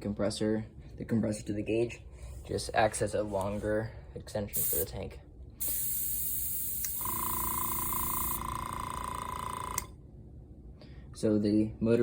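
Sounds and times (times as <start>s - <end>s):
compressed air hissing: 4.6s - 4.9s, 5.6s - 8.4s
compressor motor humming: 4.6s - 4.9s, 5.6s - 9.9s.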